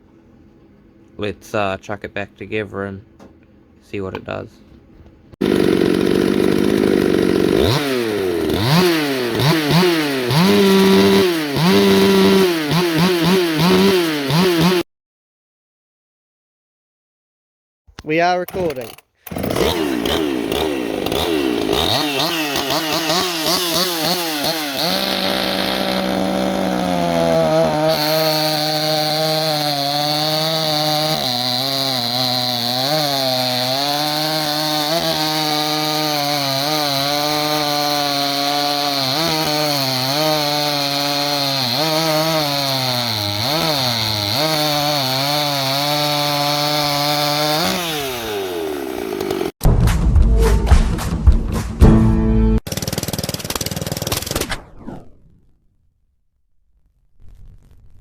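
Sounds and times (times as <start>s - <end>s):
chainsaw engine revving: 5.4s - 14.8s, 18.4s - 49.6s, 52.6s - 54.4s.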